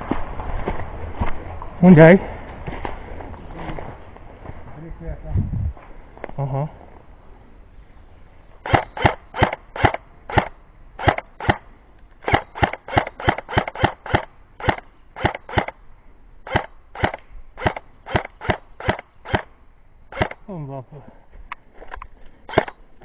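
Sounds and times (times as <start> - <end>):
airsoft gun shots: 8.6 - 15.8, 16.5 - 19.5, 20.1 - 20.4, 22.5 - 22.8.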